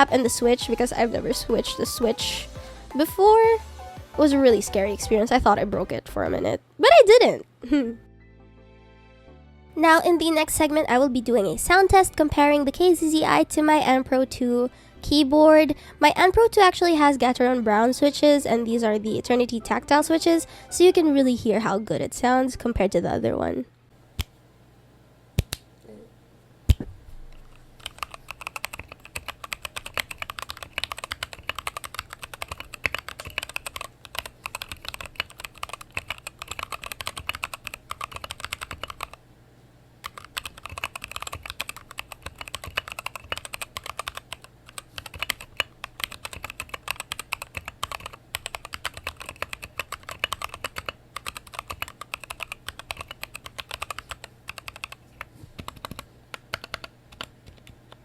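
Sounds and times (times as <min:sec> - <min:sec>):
fast mechanical keyboard typing: 0:27.4 - 0:39.2, 0:40.0 - 0:55.0, 0:55.6 - 0:58.0.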